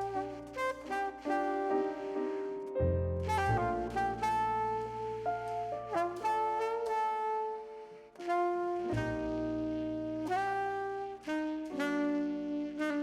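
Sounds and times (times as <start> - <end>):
instrumental jazz with horns: 0.0 - 13.0
steady bass: 2.8 - 6.9, 8.8 - 10.8.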